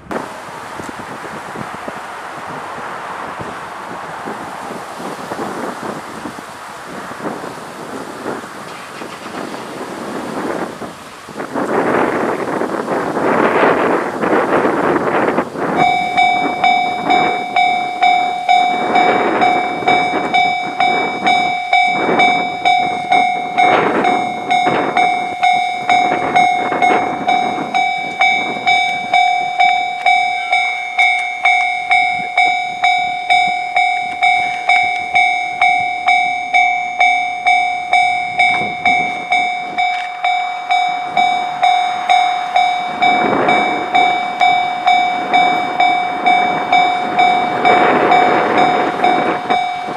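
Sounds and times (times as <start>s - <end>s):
train wheel and rail clatter: 0.0s - 49.9s
level-crossing alarm ding: 15.7s - 49.9s.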